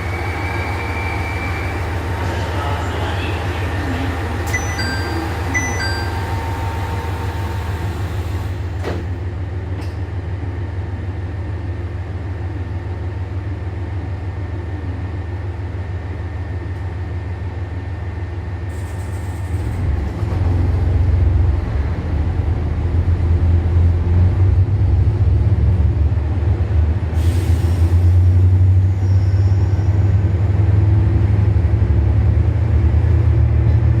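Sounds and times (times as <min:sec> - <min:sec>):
diesel train engines: 0:00.0 - 0:34.0
door chime: 0:04.5 - 0:07.0.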